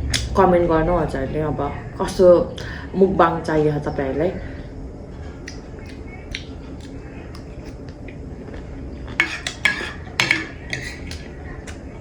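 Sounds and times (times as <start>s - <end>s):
utensil clinking against dish: 9.1s - 11.3s.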